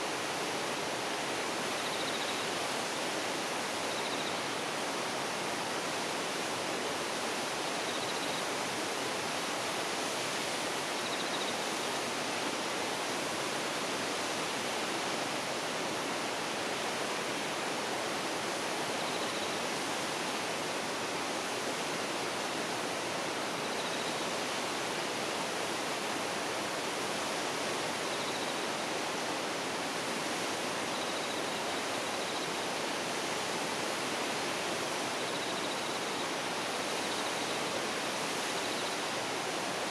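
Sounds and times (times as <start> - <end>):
waterfall rushing: 24.4 - 39.9.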